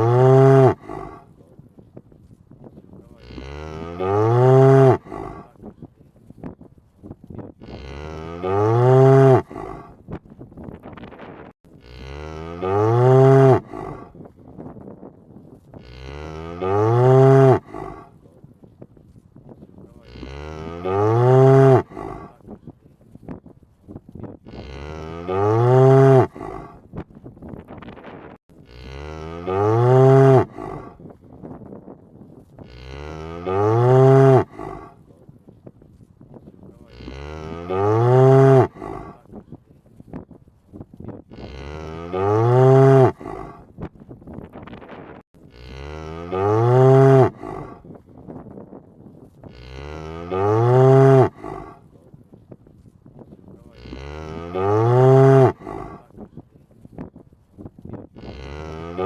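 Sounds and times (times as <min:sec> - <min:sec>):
cow mooing: 0:00.0 - 0:01.2, 0:03.1 - 0:05.5, 0:07.6 - 0:10.0, 0:11.8 - 0:14.1, 0:15.8 - 0:18.1, 0:20.0 - 0:22.4, 0:24.5 - 0:26.8, 0:28.6 - 0:31.0, 0:32.6 - 0:35.0, 0:36.8 - 0:39.2, 0:41.3 - 0:43.6, 0:45.5 - 0:47.9, 0:49.4 - 0:51.8, 0:53.7 - 0:56.1, 0:58.2 - 0:59.0.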